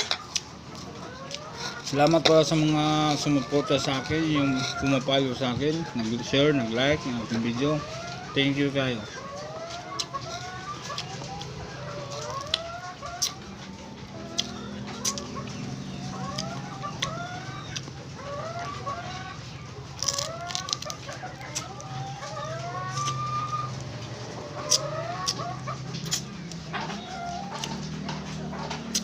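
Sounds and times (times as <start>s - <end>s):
chickens clucking: 0.0s - 29.0s.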